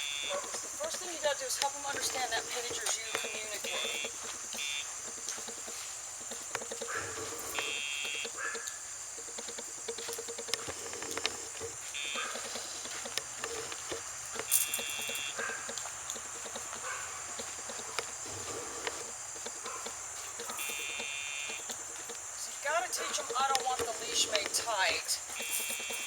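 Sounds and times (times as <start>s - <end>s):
collar sound box buzzing: 0.0s - 1.2s, 2.0s - 8.6s, 9.2s - 13.8s, 14.5s - 22.0s.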